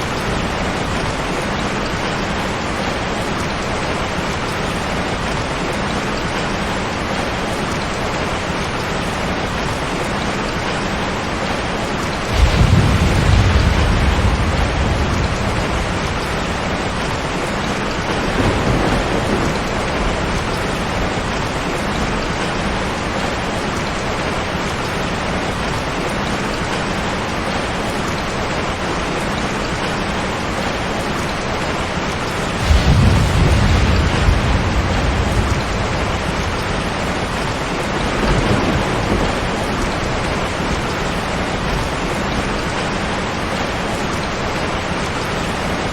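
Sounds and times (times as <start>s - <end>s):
heavy rain on a tin roof: 0.0s - 45.9s
thunder rumbling: 12.1s - 24.5s, 32.3s - 43.9s.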